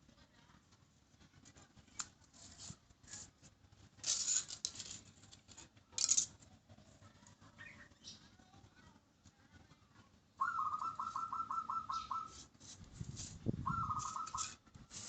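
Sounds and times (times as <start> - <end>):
plastic toy parts clicking: 4.0 - 6.4.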